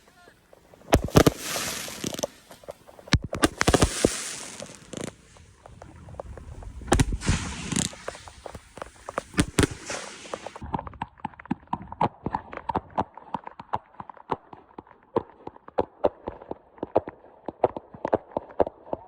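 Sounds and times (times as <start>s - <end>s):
fireworks bangs: 0.0s - 10.6s
fireworks crackling hiss: 0.0s - 10.6s.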